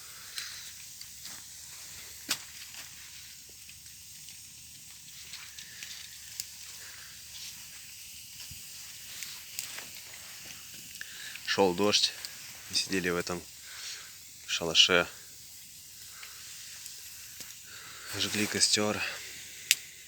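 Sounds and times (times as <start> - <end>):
campfire crackling and popping: 0.0 - 20.0.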